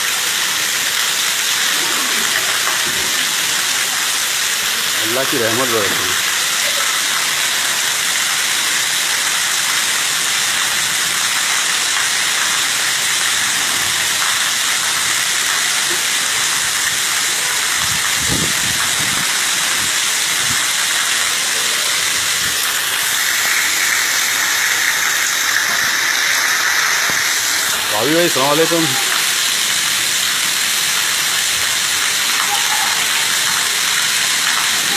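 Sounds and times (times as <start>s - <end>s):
heavy rain pouring: 0.0s - 34.9s.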